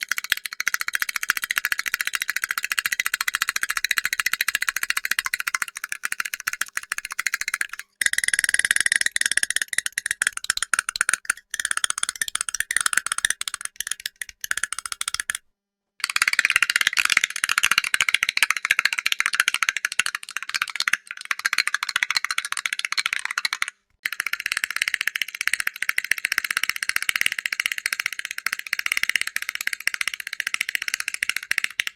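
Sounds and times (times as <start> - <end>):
cartoon teeth chattering: 0.0 - 15.4.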